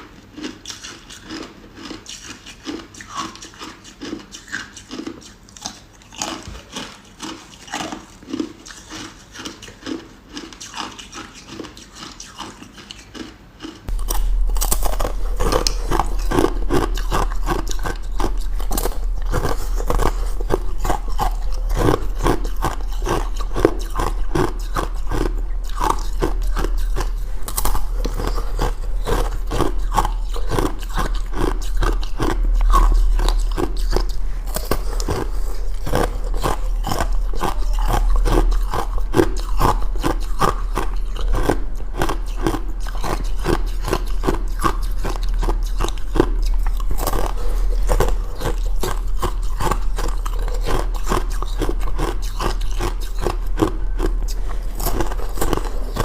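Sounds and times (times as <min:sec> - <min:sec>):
ice crunching being chewed: 0:00.0 - 0:56.0
steady low hum: 0:13.4 - 0:56.0.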